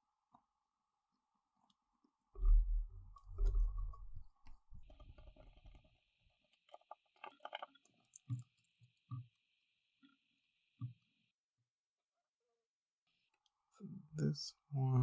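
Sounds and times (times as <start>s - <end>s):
low handling rumble: 2.4s - 4.9s
light clicks and taps: 4.4s - 9.3s.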